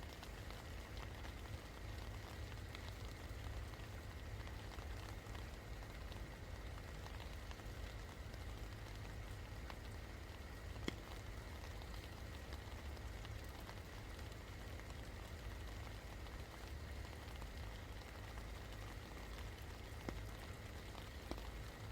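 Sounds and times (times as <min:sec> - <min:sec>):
steady rain falling: 0:00.0 - 0:21.9
drops ticking on a surface: 0:04.4 - 0:17.1, 0:17.9 - 0:21.9.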